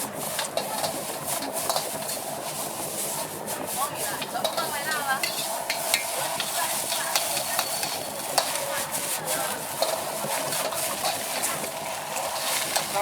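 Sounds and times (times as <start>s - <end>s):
food sizzling in a wok: 0.0s - 13.0s
metal spatula scraping a wok: 0.0s - 13.0s.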